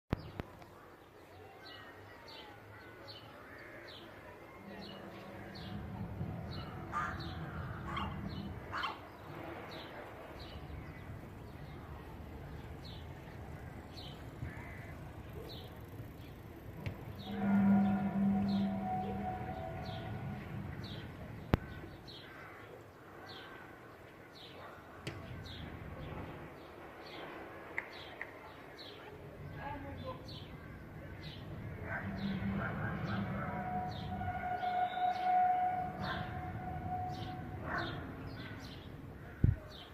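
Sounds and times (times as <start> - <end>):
birds chirping: 0.1 - 39.9
low horn-like drone: 4.5 - 8.8, 17.1 - 22.0, 31.4 - 38.7.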